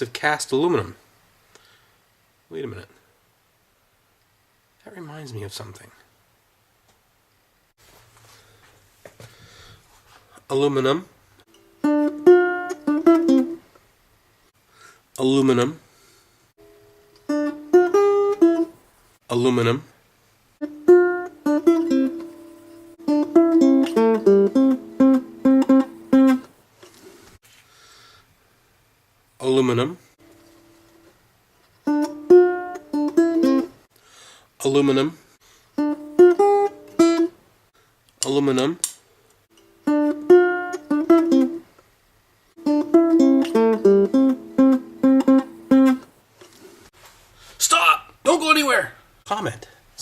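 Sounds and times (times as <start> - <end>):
acoustic guitar playing: 11.5 - 13.7, 16.6 - 18.8, 20.6 - 26.6, 30.2 - 31.1, 31.8 - 33.8, 35.8 - 37.4, 39.5 - 41.7, 42.6 - 46.2.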